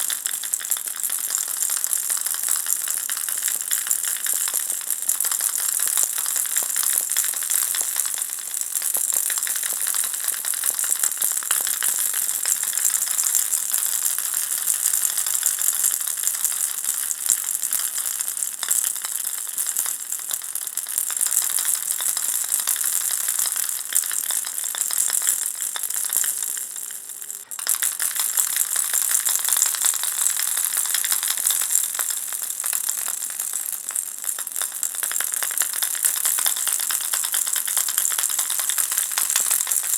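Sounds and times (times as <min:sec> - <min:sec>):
baby rattle shaken: 0:21.4 - 0:33.4.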